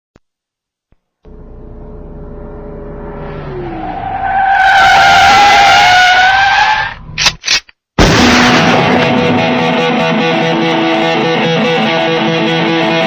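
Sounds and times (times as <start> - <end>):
car tyres screeching: 1.3 - 7.2
distorted electric guitar rock music: 8.5 - 13.0.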